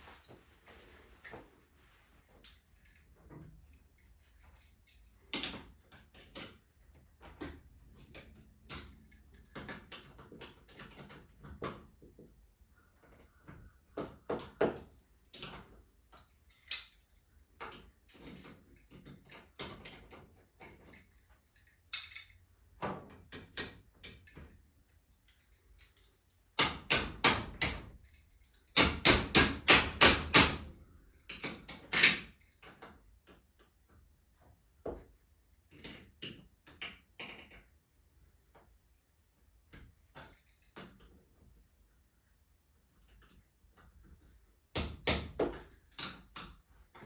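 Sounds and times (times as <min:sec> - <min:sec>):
metal tools knocking and clicking: 0:17.6 - 0:24.6, 0:25.2 - 0:33.4.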